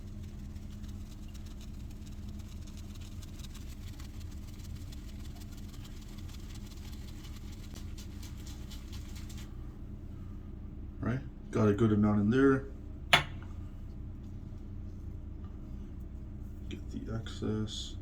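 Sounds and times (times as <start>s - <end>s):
shaving brush swishing on soap: 0.0s - 9.8s
steady low hum: 0.0s - 18.0s.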